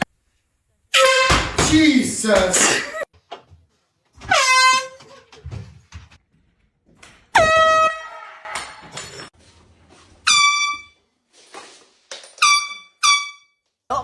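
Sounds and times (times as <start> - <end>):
air horn blasts: 0.9 - 1.5.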